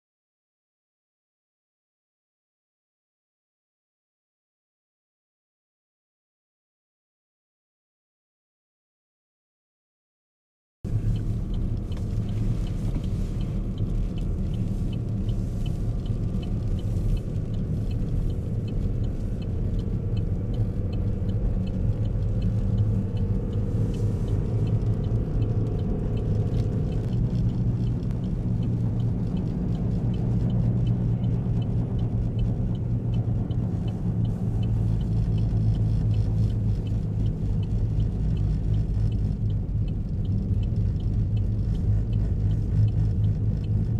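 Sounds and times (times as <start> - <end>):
car engine and tyre rumble: 10.8 - 43.9
faint ticking: 10.9 - 43.9.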